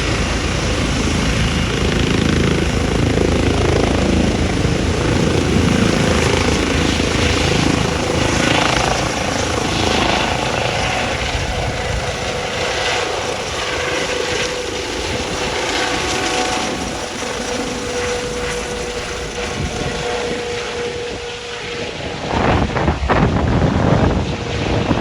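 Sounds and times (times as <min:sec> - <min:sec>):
helicopter rotor and turbine: 0:00.0 - 0:25.0.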